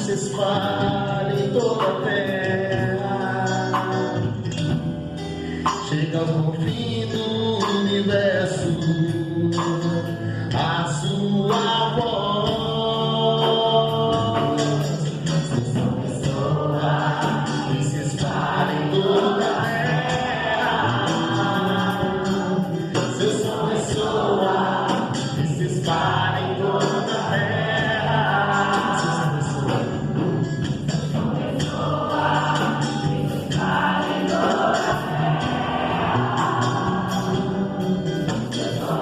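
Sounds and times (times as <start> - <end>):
band with steady beat: 0.0 - 39.0
choir singing: 15.8 - 39.0.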